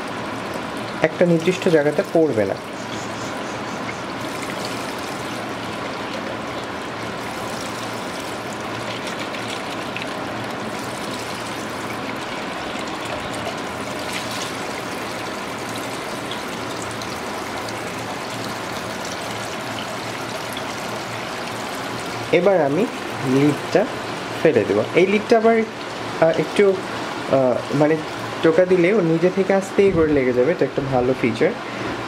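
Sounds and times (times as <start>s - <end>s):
water pouring into washing machine: 4.1s - 25.0s.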